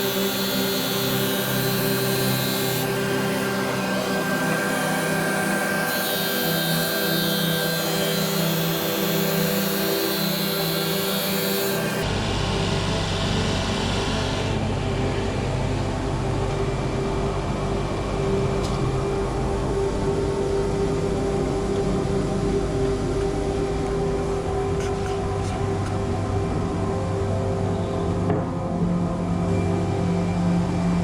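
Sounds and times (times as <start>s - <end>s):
power tool motor humming: 0.0s - 14.6s.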